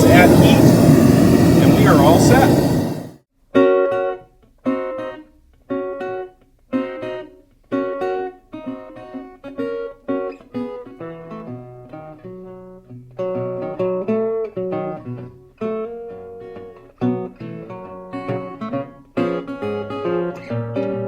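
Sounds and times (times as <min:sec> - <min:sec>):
acoustic blues guitar strumming: 0:13.2 - 0:21.0.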